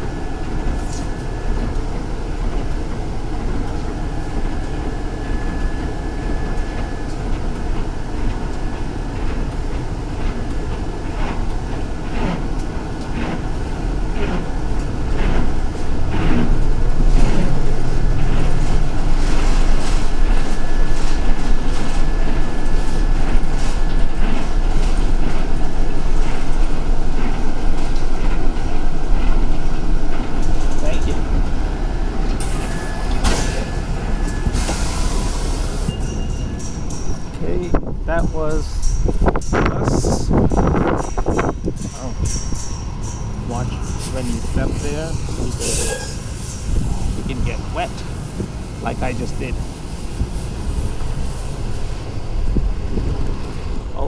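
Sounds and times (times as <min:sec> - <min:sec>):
bus engine and road rumble: 0:00.0 - 0:54.0
rattles and knocks: 0:35.9 - 0:48.6.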